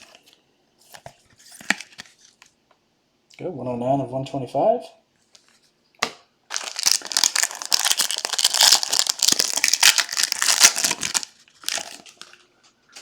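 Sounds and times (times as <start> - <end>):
card pack wrapper crinkling: 6.5 - 12.4.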